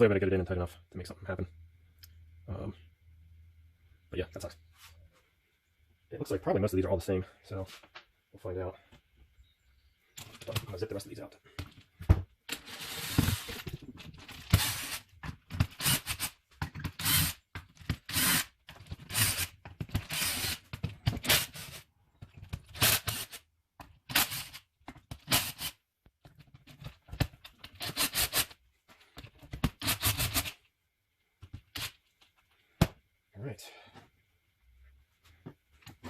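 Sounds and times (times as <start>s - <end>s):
power tool spinning bolts: 17.0s - 17.4s.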